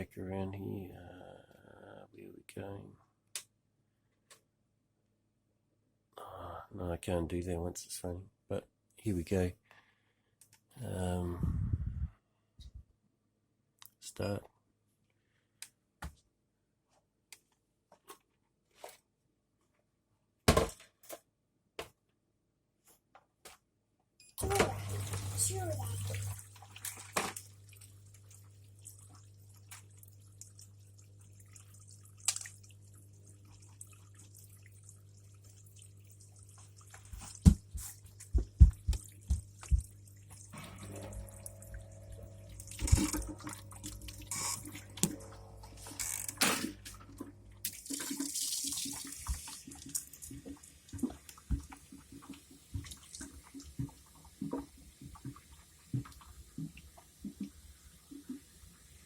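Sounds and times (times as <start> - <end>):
dishwasher humming: 24.4 - 27.9, 37.0 - 50.4
water splashing and dripping: 24.4 - 58.5.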